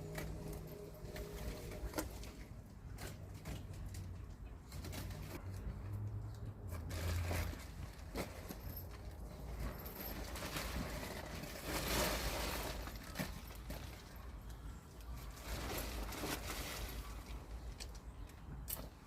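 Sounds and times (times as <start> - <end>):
plastic sheeting rustling: 6.8 - 14.4, 15.1 - 17.9.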